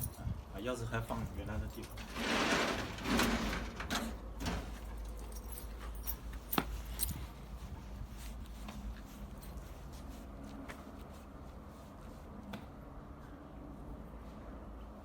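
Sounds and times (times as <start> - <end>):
keys jingling: 4.8 - 7.4
rustle of handling: 4.8 - 13.4.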